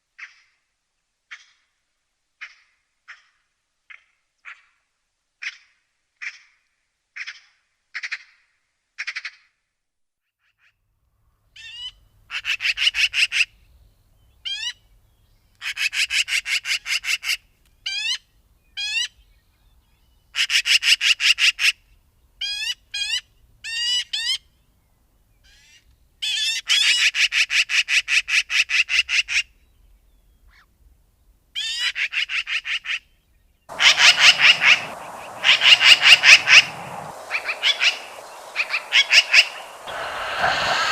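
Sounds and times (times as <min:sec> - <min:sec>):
hiss: 0:33.7 - 0:40.9
magpie chattering: 0:33.7 - 0:40.9.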